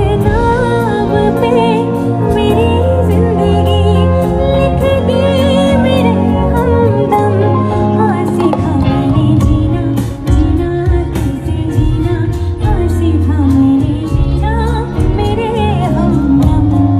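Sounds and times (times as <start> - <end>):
bass: 0.0 - 16.9
woman singing: 0.0 - 16.9.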